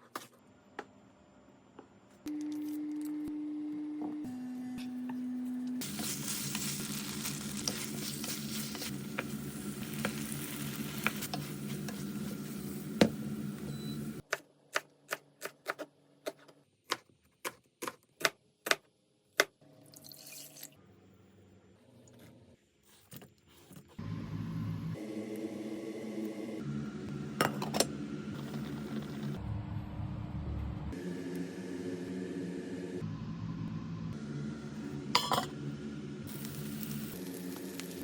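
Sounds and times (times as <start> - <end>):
food sizzling in a pan: 5.8 - 14.2, 36.3 - 38.0
low hum: 24.0 - 38.0.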